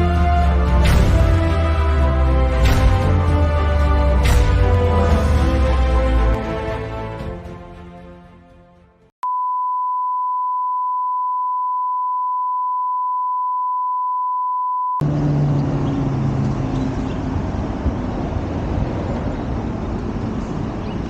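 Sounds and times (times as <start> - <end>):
music: 0.0 - 9.1
steady pure beep tone: 9.2 - 15.0
passing traffic: 15.0 - 21.0.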